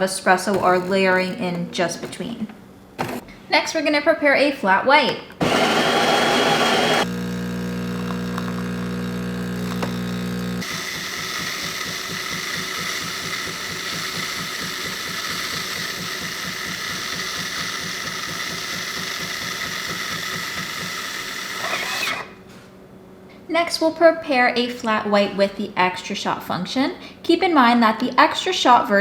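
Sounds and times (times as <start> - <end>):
pump pulsing with high whine: 5.4 - 22.2
espresso machine motor hum: 5.4 - 22.3.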